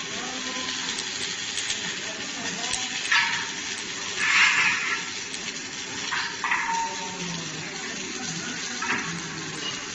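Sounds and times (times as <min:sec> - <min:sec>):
hissing sizzling bursts: 0:00.0 - 0:09.9
welding machine noise: 0:00.0 - 0:09.9.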